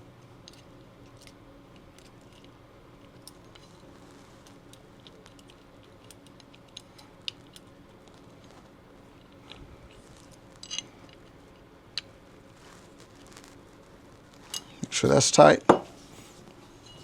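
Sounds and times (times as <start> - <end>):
faint room hum: 0.0 - 17.0
metal gun parts clicking: 10.3 - 11.2.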